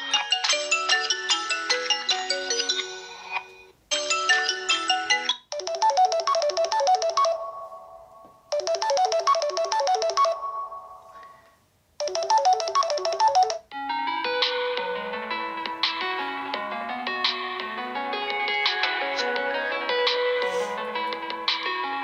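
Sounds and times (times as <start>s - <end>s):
phone ringtone high melody: 0.0s - 11.4s, 12.0s - 14.4s
ringtone with lower longer notes: 0.0s - 11.4s, 12.0s - 15.6s.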